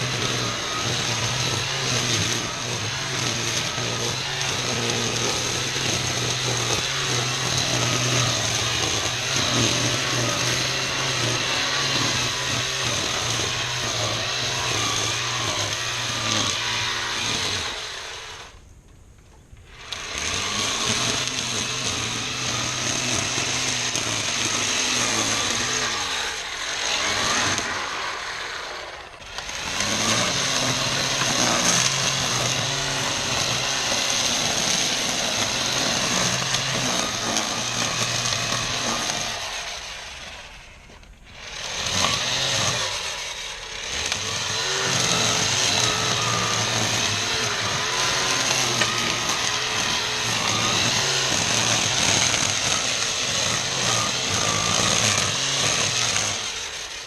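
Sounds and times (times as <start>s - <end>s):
string trimmer cutting grass: 0.0s - 18.7s, 19.6s - 57.0s.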